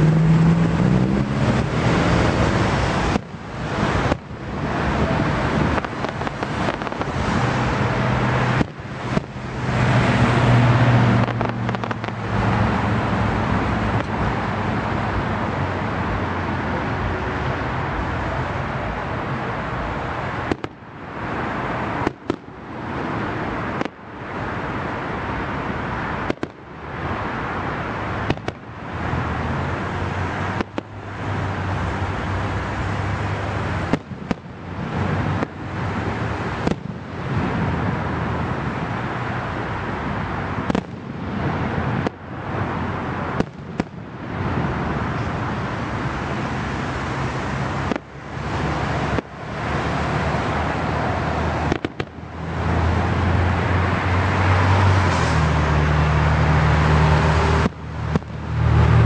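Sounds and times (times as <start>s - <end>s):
fireworks booming and crackling: 0.7s - 14.5s, 19.7s - 31.6s, 33.2s - 39.0s, 39.8s - 46.5s, 47.1s - 52.3s, 57.0s - 58.9s
loud firework bangs: 5.1s - 13.3s, 19.8s - 20.9s, 21.9s - 23.1s, 23.7s - 24.0s, 26.2s - 26.7s, 28.2s - 28.7s, 33.6s - 35.8s, 36.5s - 37.7s, 40.6s - 42.3s, 43.2s - 44.7s, 51.6s - 52.2s.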